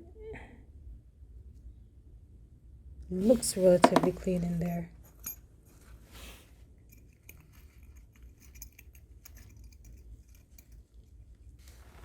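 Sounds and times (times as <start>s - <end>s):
small metal parts clicking and rattling: 3.8s - 5.4s, 6.9s - 11.3s.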